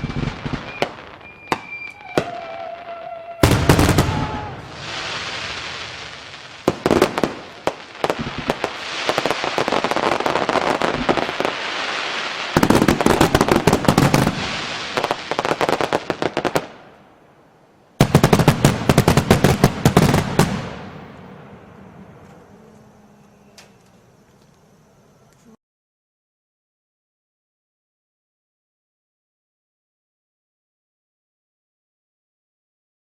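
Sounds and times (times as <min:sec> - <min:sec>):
fireworks hiss: 0:00.0 - 0:16.6
fireworks crackling pops: 0:00.0 - 0:17.0.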